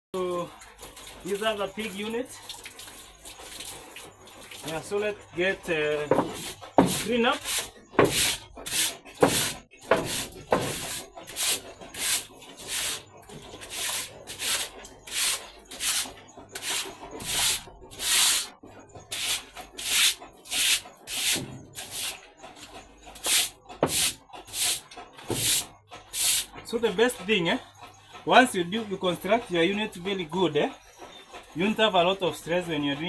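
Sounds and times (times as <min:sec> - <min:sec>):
water washing floor: 0:00.2 - 0:33.0
broom scrubbing wet floor: 0:04.4 - 0:27.6.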